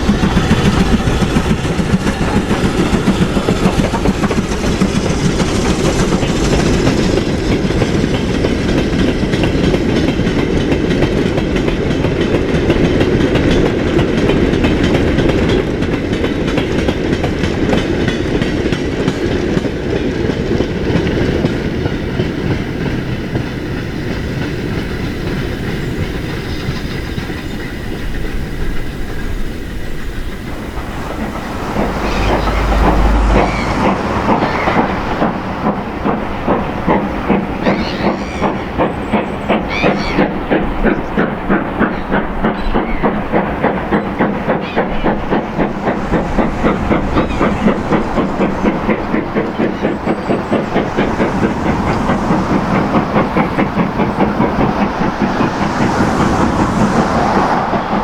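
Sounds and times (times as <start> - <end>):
steam train passing: 0.0 - 58.0
wheels clicking over rail joints: 0.0 - 58.0
steam hiss: 17.5 - 58.0.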